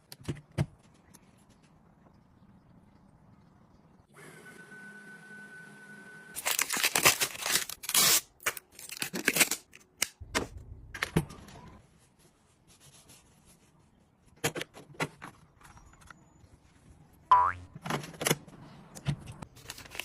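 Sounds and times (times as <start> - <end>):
packaging tearing and crinkling: 6.4 - 10.1, 19.6 - 20.0.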